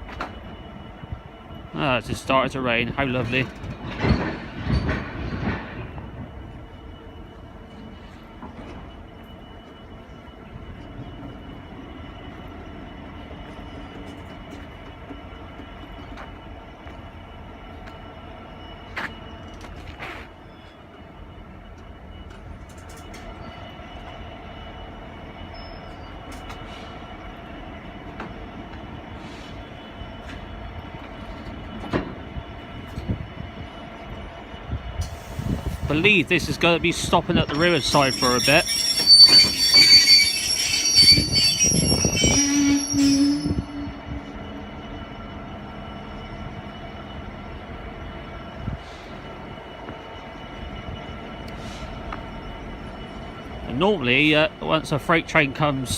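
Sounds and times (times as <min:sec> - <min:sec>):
train wheels and brakes squealing: 0:00.0 - 0:55.9.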